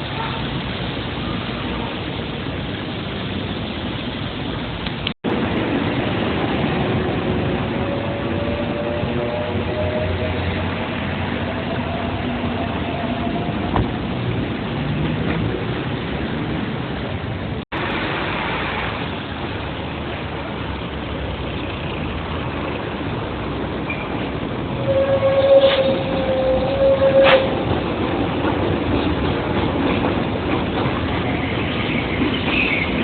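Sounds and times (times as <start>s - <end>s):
train running past: 0.0s - 33.0s
train horn: 7.6s - 10.7s, 24.8s - 27.6s.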